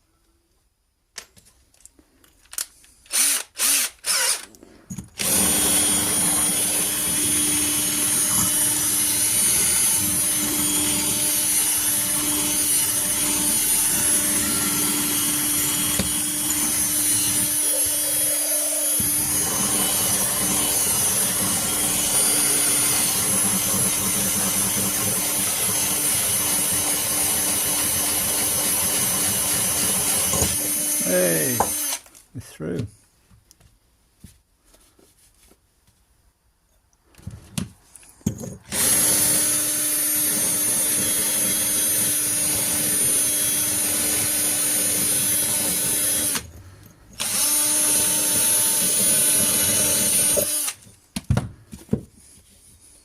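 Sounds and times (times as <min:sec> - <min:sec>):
electric drill running: 0:03.1 - 0:04.5, 0:05.2 - 0:32.1, 0:38.7 - 0:46.5, 0:47.2 - 0:50.8.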